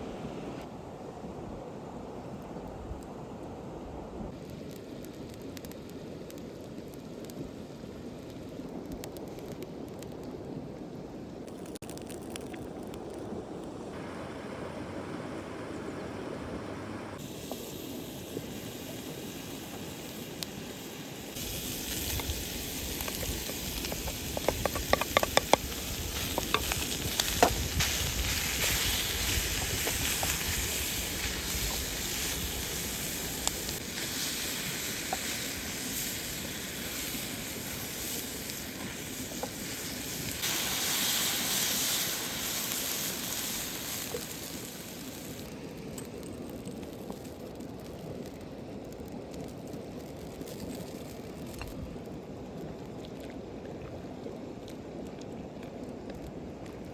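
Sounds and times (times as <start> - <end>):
food sizzling in a pan: 17.2 - 45.7.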